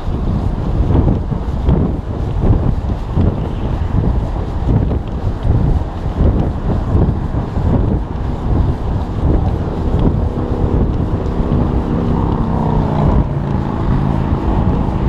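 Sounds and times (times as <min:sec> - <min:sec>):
passing vehicle engine hum: 0:00.0 - 0:15.0
wind buffeting microphone: 0:00.0 - 0:15.0.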